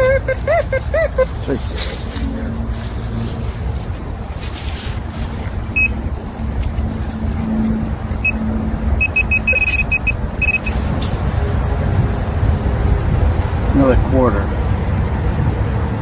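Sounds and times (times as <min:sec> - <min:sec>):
low rumble: 0:00.0 - 0:16.0
short detector beeps: 0:09.0 - 0:10.8.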